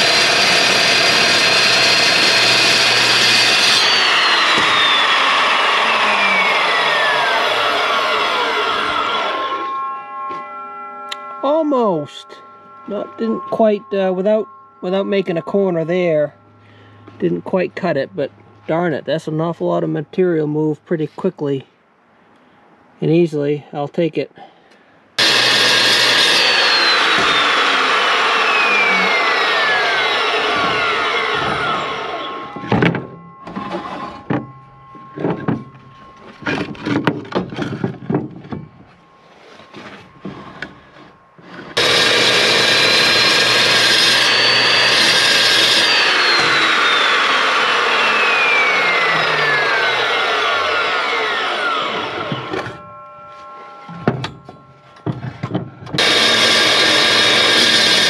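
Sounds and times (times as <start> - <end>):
chop saw cutting steel: 0.0 - 10.5, 25.2 - 58.0
metal knocks and clanks: 32.5 - 40.8, 53.8 - 56.0.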